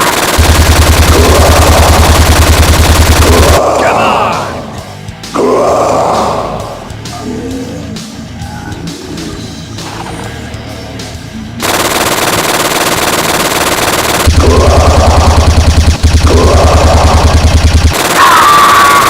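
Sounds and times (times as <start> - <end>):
automatic gunfire: 0.0 - 3.6, 11.6 - 19.0
music: 3.2 - 15.5.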